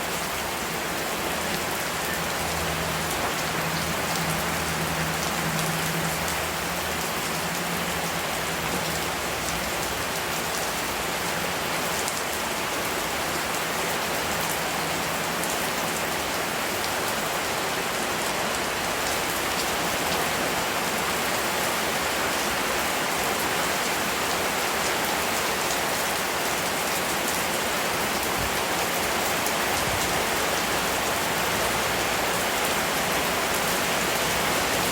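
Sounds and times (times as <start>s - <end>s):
steady rain falling: 0.0s - 34.9s.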